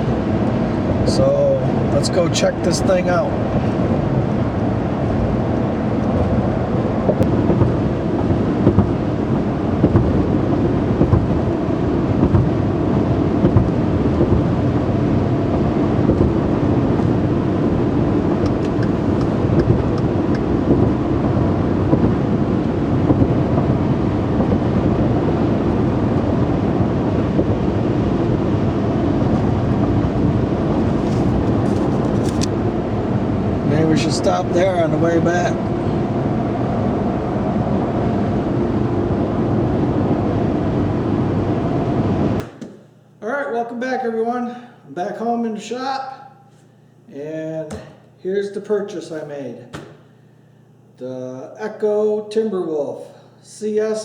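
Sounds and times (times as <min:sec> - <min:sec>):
tyre road noise: 0:00.0 - 0:37.5
truck engine rumble: 0:00.0 - 0:42.4.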